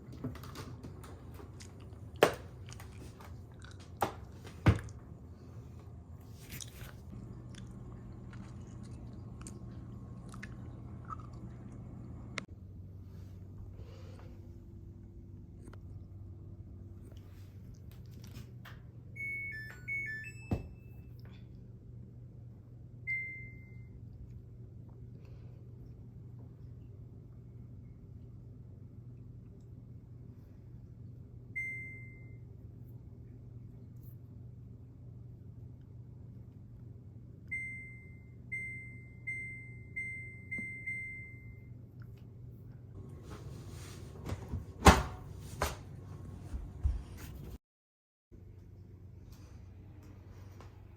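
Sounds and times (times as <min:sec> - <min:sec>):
steady low hum: 0:00.0 - 0:47.6
washing machine electronic tune: 0:19.0 - 0:21.2, 0:37.5 - 0:41.8.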